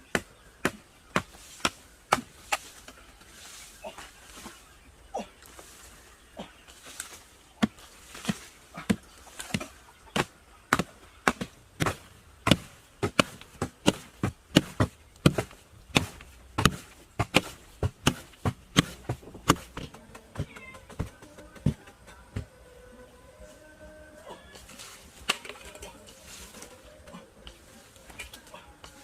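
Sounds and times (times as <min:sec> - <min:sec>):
chopping strikes on wood: 0:07.6 - 0:21.8.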